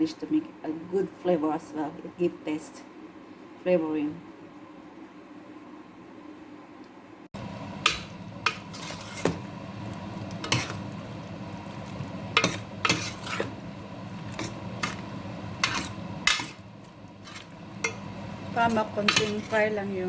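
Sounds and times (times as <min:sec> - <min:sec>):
potatoes sizzling in a pan: 0:07.4 - 0:20.0
utensil clinking and scraping pan: 0:07.8 - 0:09.5, 0:10.4 - 0:10.8, 0:12.3 - 0:13.6, 0:14.3 - 0:16.6, 0:17.2 - 0:19.8.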